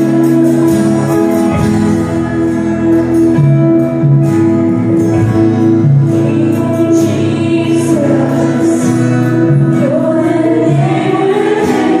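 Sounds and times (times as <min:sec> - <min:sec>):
long held instrumental chords: 0:00.0 - 0:12.0
voices singing: 0:06.3 - 0:12.0.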